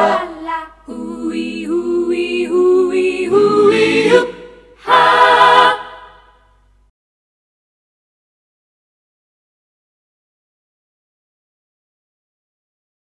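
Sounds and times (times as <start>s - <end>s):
a cappella voices singing chords: 0.0s - 6.5s.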